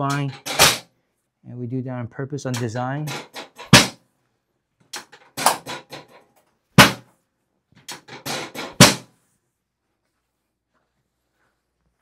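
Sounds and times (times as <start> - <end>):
drop table clacking down: 0.0 - 0.9, 5.0 - 7.0.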